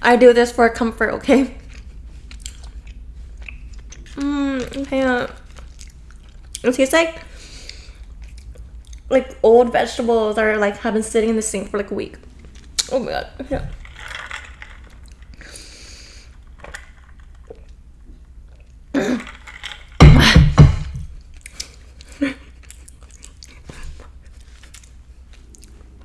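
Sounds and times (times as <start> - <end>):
woman chewing wetly: 1.6 - 6.6, 7.6 - 9.1, 21.3 - 26.0
woman gagging: 20.0 - 20.8.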